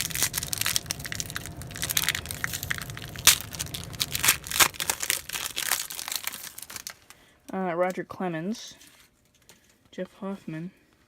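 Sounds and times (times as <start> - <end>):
wrapper crinkling and tearing: 0.0 - 7.4.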